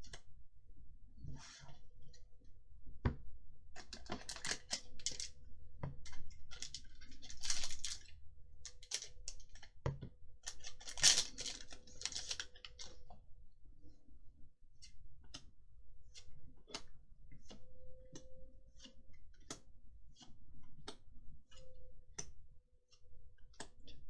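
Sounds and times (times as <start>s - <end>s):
cards sliding rustles: 6.6s - 8.0s, 10.5s - 12.9s.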